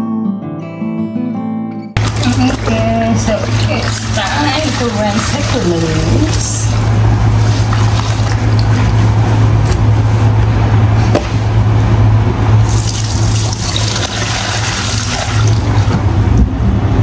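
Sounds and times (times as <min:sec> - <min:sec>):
tap water splashing: 0:02.0 - 0:10.0, 0:12.6 - 0:16.1
steady low hum: 0:02.0 - 0:17.0.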